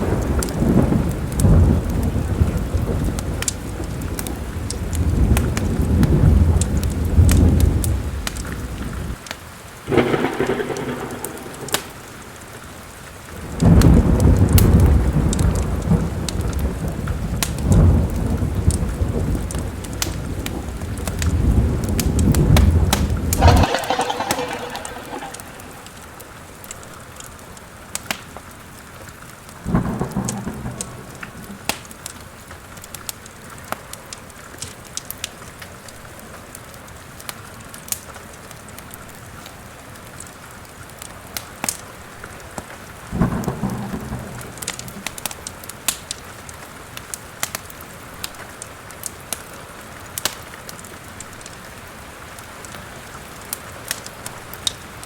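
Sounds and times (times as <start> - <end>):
steady rain: 0.0 - 26.6, 27.3 - 55.0
fireplace fire crackling: 9.9 - 13.8, 22.9 - 26.3
thunder rumbling: 9.9 - 16.2, 17.2 - 26.4.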